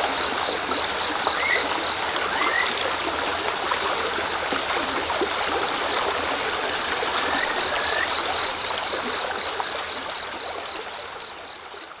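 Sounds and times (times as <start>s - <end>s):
cricket pulsing trill: 0.0s - 11.5s
stream babbling: 0.0s - 11.8s
frogs rising whistle calls: 1.3s - 2.8s.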